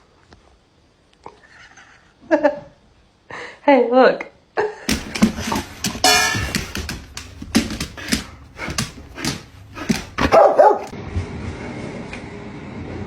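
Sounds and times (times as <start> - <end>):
dog barking: 9.2 - 11.0.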